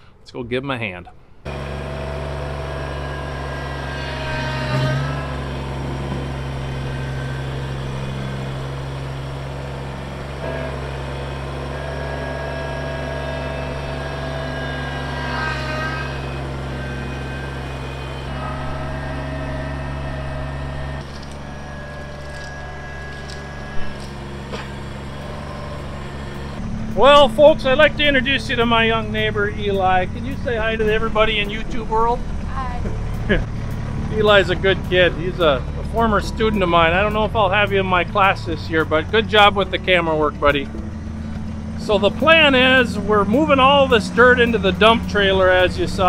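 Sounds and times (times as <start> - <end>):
tractor diesel engine running: 1.4 - 46.0
squeaks or rattles: 3.7 - 8.6, 13.4 - 27.0.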